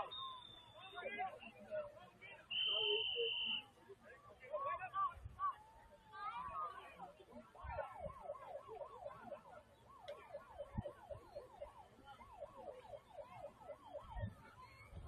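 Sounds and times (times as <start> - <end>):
faint siren yelping: 5.9 - 15.0.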